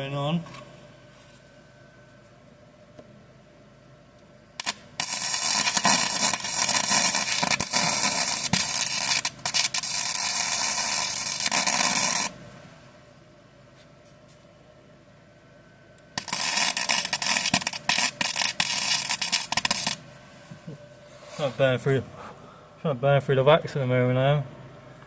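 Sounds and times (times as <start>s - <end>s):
welder arc crackling: 4.6s - 12.4s, 16.1s - 20.8s.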